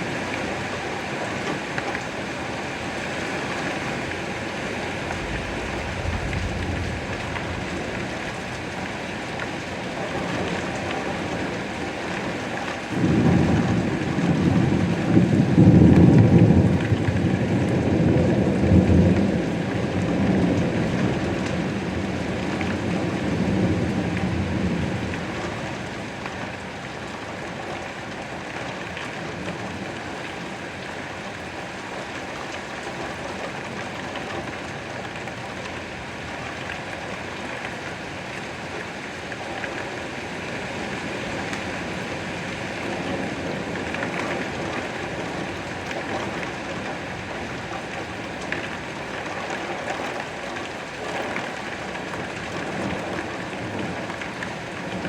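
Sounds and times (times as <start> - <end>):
steady rain falling: 0.0 - 55.0
low rumble: 4.8 - 8.8.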